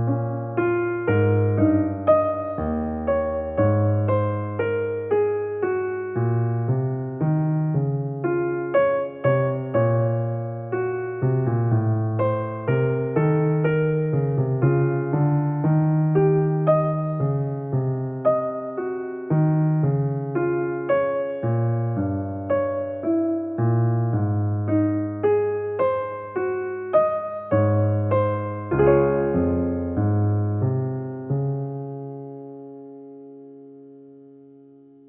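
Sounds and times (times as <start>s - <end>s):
slow piano melody: 0.0s - 35.0s.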